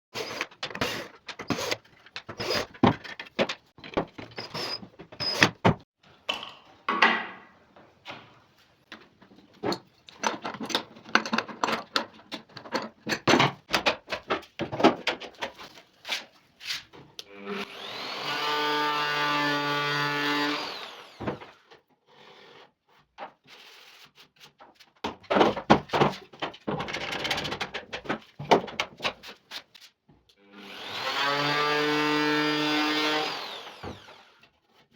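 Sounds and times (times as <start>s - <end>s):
router motor whining: 17.3s - 21.6s, 30.6s - 34.4s
router rasping cutting strokes: 30.6s - 34.3s.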